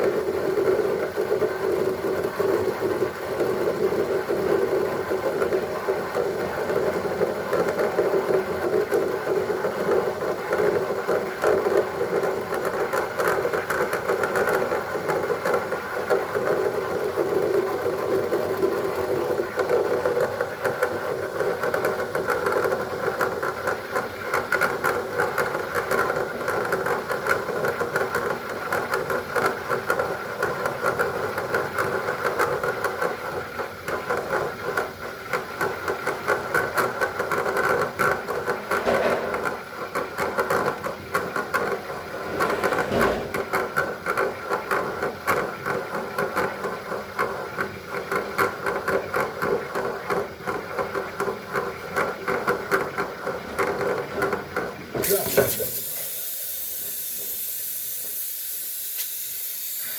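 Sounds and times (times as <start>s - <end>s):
steam cleaner running: 55.0s - 59.9s.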